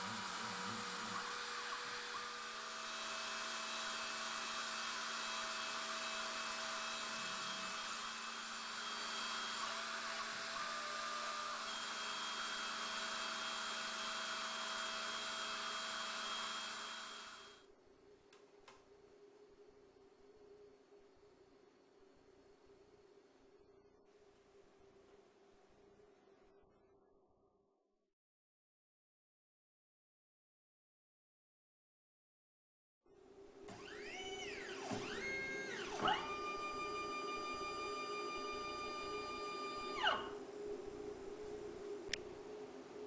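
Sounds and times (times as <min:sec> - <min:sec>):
machine tones switching on and off: 0:00.0 - 0:17.6, 0:33.7 - 0:40.8
milling machine motor whirring: 0:00.0 - 0:17.6, 0:33.7 - 0:40.6.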